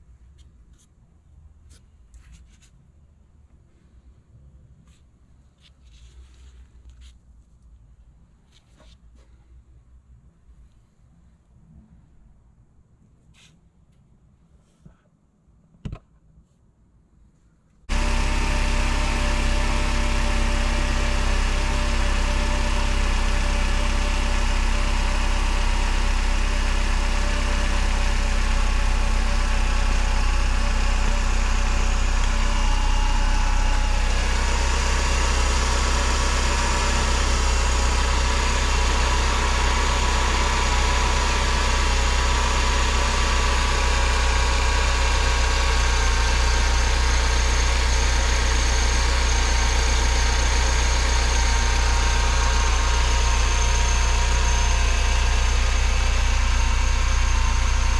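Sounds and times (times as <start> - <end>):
car engine idling: 17.9 - 57.9.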